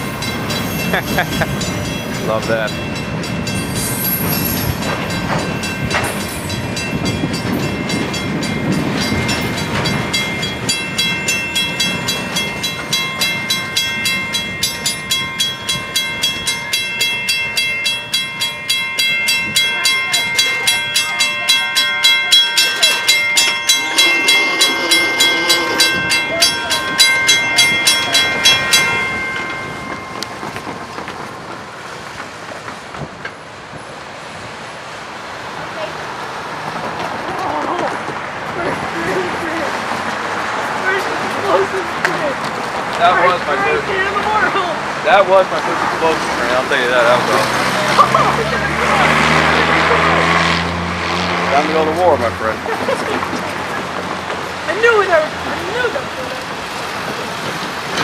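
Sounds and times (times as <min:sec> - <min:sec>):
high ringing tones: 0:00.0 - 0:30.6
train wheels clacking over rail joints: 0:00.0 - 0:34.0, 0:51.0 - 0:58.0.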